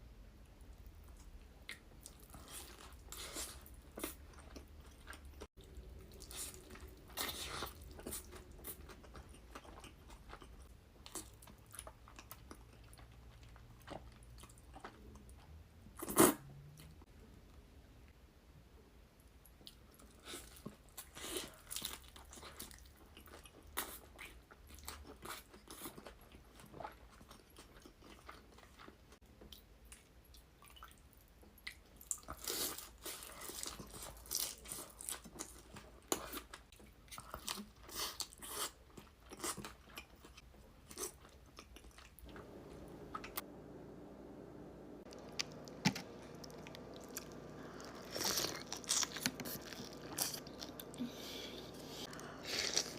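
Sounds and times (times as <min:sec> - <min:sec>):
crunchy chewing and biting: 0:02.0 - 0:15.1, 0:45.1 - 0:52.9.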